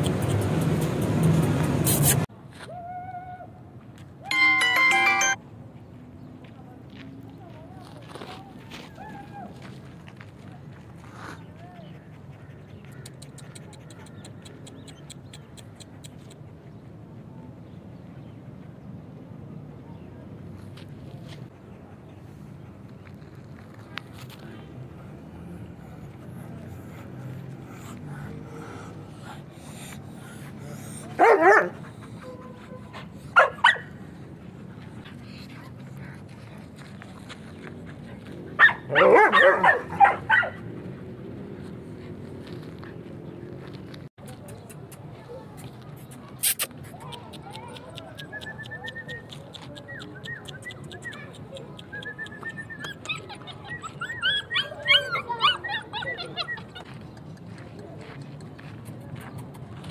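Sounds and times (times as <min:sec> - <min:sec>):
dog barking: 0:31.1 - 0:32.6, 0:33.4 - 0:33.9, 0:38.6 - 0:40.6
puppies yipping and whimpering: 0:51.8 - 0:57.2.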